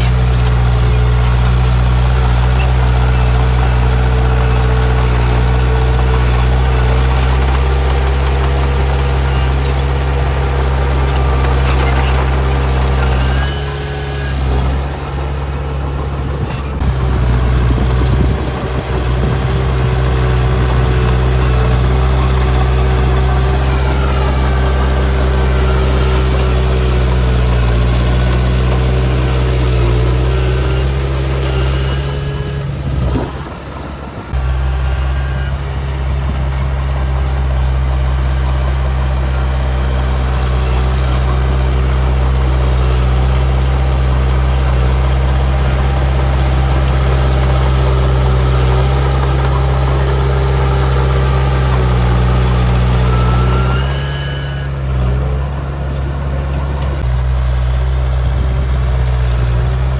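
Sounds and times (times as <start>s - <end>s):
bulldozer diesel engine running: 0.0s - 59.9s
faint high squeals: 20.0s - 37.0s, 47.4s - 57.0s.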